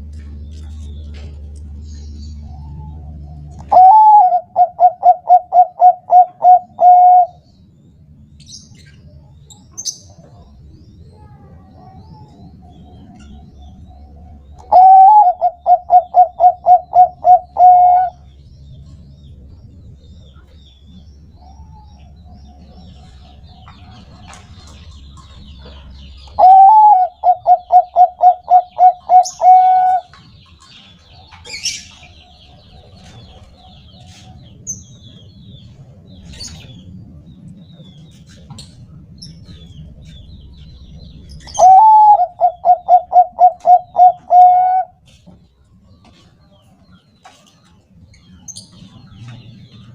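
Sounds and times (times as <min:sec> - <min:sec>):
dove singing coos: 0:02.1 - 0:07.5, 0:11.2 - 0:36.9, 0:37.8 - 0:45.2
soft drawn-out dove coos: 0:03.6 - 0:07.4, 0:14.6 - 0:18.2, 0:26.4 - 0:30.1, 0:41.6 - 0:45.0.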